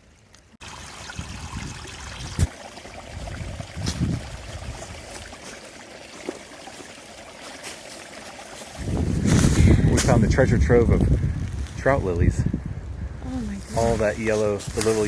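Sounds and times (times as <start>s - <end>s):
creek running: 0.0s - 11.1s
wind on microphone: 1.0s - 5.3s, 8.7s - 14.8s.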